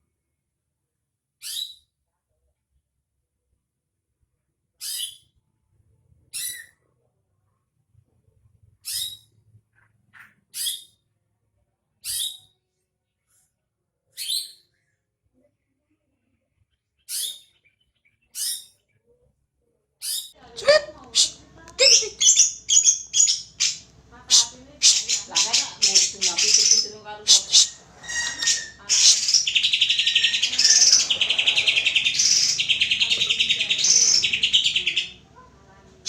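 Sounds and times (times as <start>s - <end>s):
bird chirping calls: 17.1s - 18.8s, 20.0s - 36.0s.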